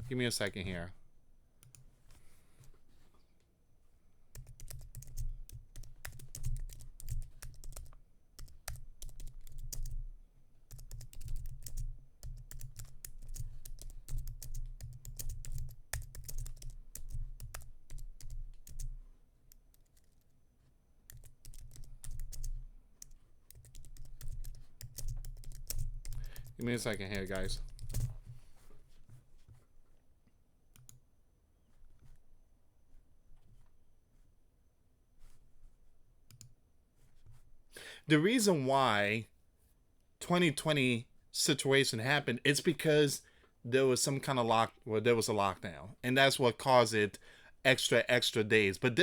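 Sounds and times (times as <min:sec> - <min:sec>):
typing on computer keyboard: 0:04.4 - 0:10.1, 0:10.7 - 0:20.3, 0:21.1 - 0:28.2, 0:36.3 - 0:36.5.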